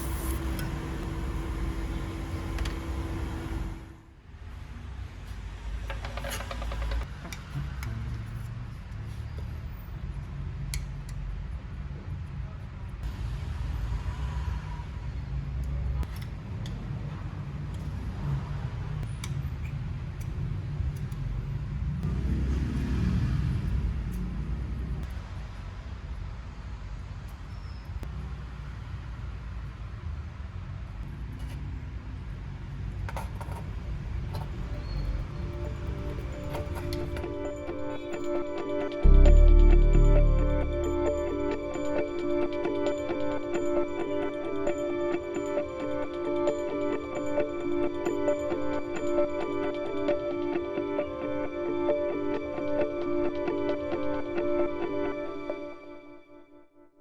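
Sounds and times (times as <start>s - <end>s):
power tool running: 0.0s - 4.0s.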